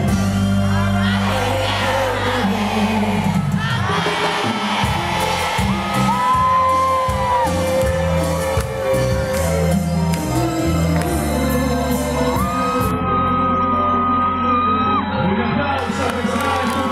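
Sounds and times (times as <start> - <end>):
live band music: 0.0 - 13.1
crowd whooping and shouting: 0.0 - 16.9.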